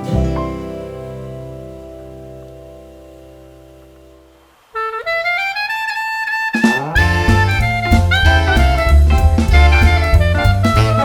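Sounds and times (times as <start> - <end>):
drum kit: 0.0 - 2.0, 6.6 - 11.0
bass: 0.0 - 4.5, 6.6 - 11.0
saxophone melody: 4.8 - 11.0.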